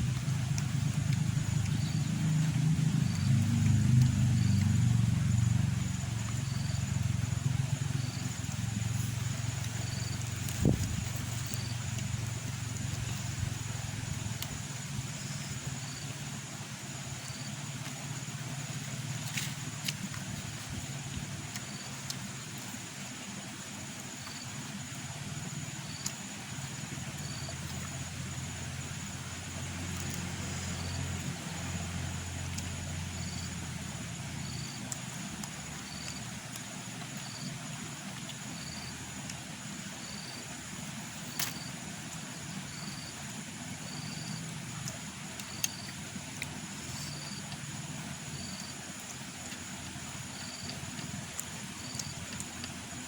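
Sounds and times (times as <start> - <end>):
insects chirping: 0.0 - 53.0
low engine-like rumble: 0.0 - 53.0
low steady hum: 0.0 - 53.0
faint sharp clicks: 41.2 - 41.7, 44.8 - 46.6, 49.0 - 52.8.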